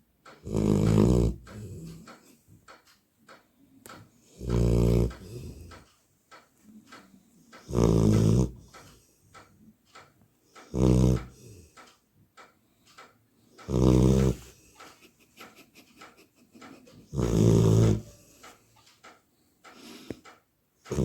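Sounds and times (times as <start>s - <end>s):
puppy snoring: 0.3s - 2.2s, 4.2s - 5.8s, 7.6s - 8.9s, 10.6s - 11.6s, 13.6s - 14.7s, 16.0s - 18.4s
soft breathing: 3.5s - 6.0s, 16.6s - 21.0s.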